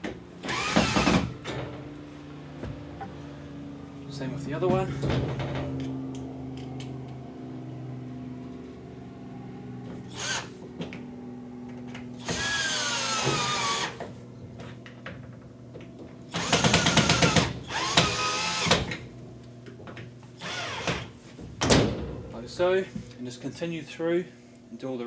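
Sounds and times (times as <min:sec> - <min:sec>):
battery drill driving screws: 0:00.5 - 0:01.2, 0:10.1 - 0:10.5, 0:12.2 - 0:14.0, 0:16.3 - 0:18.8, 0:20.4 - 0:21.1.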